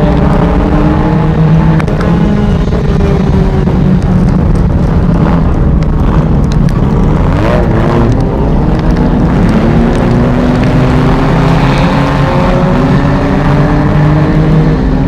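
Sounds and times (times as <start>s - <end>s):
race car engine running: 0.0s - 15.0s.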